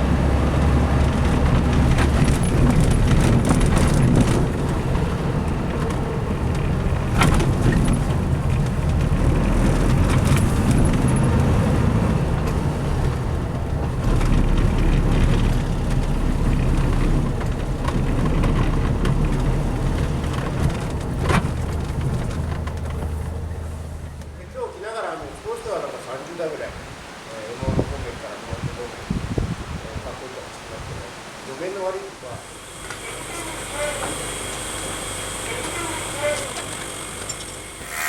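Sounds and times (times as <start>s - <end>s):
diesel engine running: 0.0s - 24.8s, 32.4s - 38.0s.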